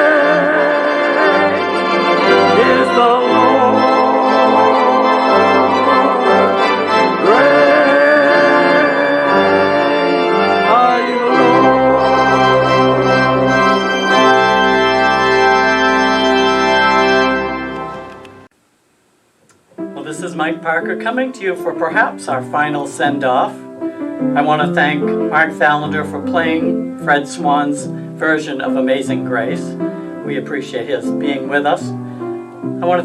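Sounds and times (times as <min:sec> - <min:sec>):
organ playing sustained chords: 0:00.0 - 0:18.5.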